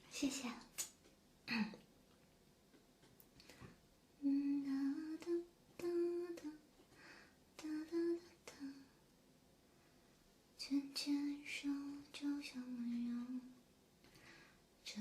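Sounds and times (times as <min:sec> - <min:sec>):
woman humming a melody: 0:04.2 - 0:06.6, 0:07.6 - 0:08.9.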